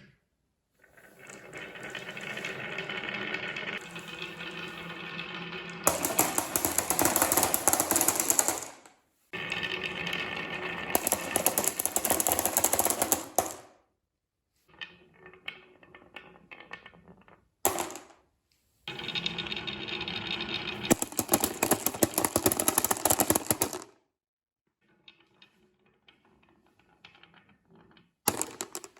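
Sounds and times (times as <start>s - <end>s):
marbles rattling down wooden run: 5.8s - 8.9s, 9.6s - 13.7s, 17.7s - 18.1s, 20.9s - 24.0s, 28.3s - 28.9s.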